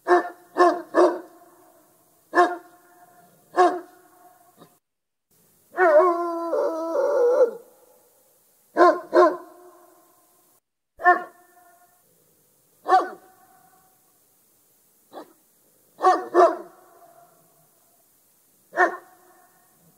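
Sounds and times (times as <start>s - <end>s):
dog barking and howling: 0.0s - 1.3s, 2.3s - 4.4s, 5.7s - 8.0s, 8.8s - 9.8s, 11.0s - 11.4s, 12.8s - 13.4s, 16.0s - 17.4s, 18.7s - 19.4s.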